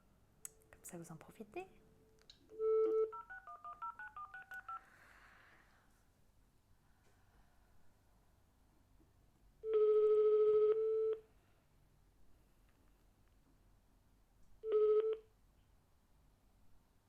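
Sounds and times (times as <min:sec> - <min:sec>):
telephone ringback tone: 0:02.6 - 0:04.8, 0:09.6 - 0:11.2, 0:14.6 - 0:15.2.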